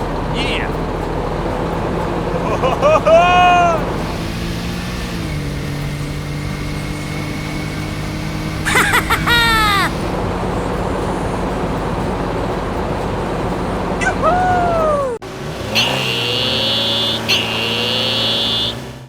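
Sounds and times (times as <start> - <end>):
model motor whine: 3.8 - 10.6, 15.3 - 19.0
high voice-like cry: 8.7 - 10.0, 14.0 - 15.2.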